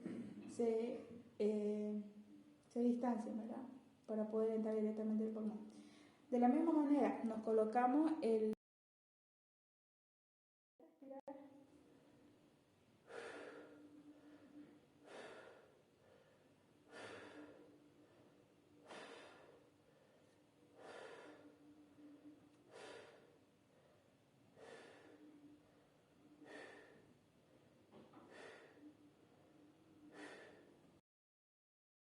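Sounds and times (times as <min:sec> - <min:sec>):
faint steady hum: 0:10.8 - 0:31.0
person breathing deeply: 0:13.0 - 0:29.0, 0:30.0 - 0:30.9.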